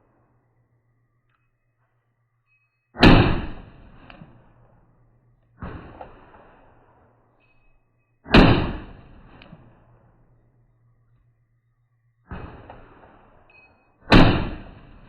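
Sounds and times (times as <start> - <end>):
gunshots with long echo: 3.0 - 4.9, 5.6 - 7.2, 8.3 - 10.2, 12.3 - 13.4, 14.1 - 15.0.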